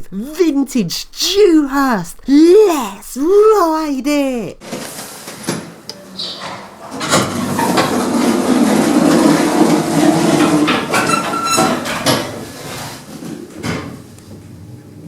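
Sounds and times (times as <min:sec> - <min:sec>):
lift doors sliding shut: 0:06.2 - 0:12.7.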